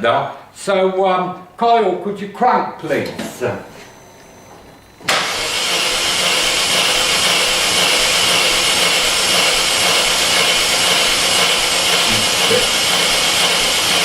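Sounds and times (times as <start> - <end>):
engine cranking on starter motor: 5.0 - 14.0
car engine running: 5.1 - 14.0.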